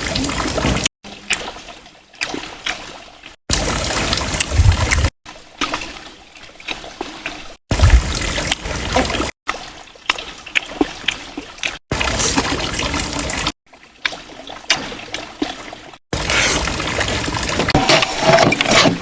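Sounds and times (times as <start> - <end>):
water trickling and splashing: 0.0 - 19.0.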